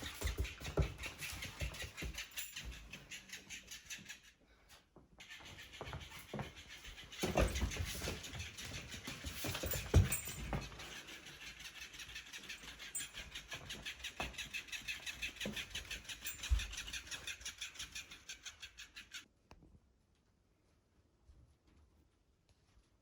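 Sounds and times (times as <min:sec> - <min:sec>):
puppy pouncing thumps: 0:07.2 - 0:10.9.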